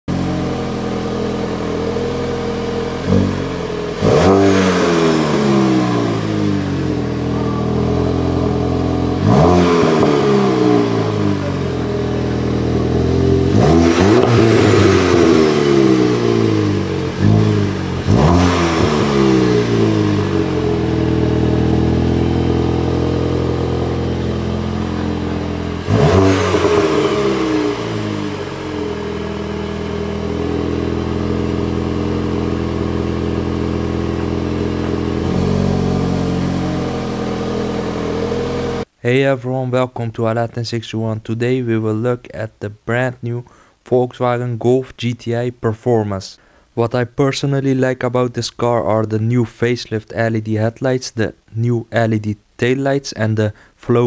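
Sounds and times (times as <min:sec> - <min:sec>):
car engine idling and revving: 0:00.1 - 0:38.9.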